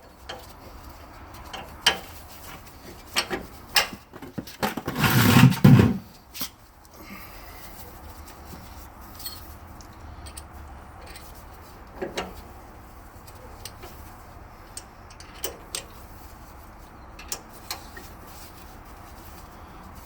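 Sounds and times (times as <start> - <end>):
metallic clicks and taps of tools: 9.2 - 12.4, 14.7 - 15.9, 17.2 - 18.1.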